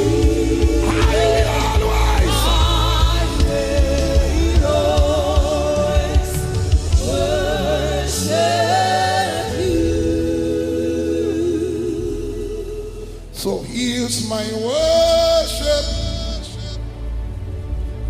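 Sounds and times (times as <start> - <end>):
band with low bass: 0.0 - 10.9
voices singing gospel: 0.0 - 17.0.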